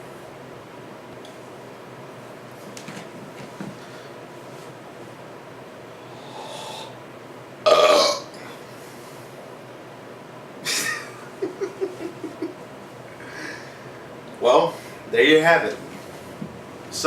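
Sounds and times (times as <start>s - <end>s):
man belching: 7.6s - 8.4s.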